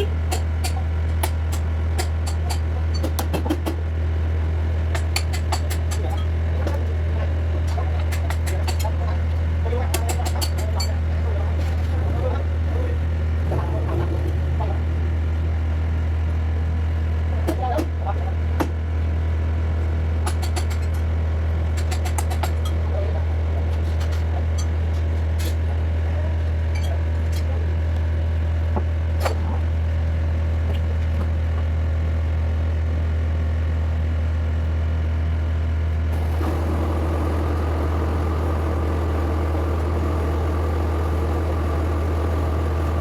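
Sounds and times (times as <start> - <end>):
excavator diesel engine drone: 0.0 - 17.4, 31.9 - 43.0.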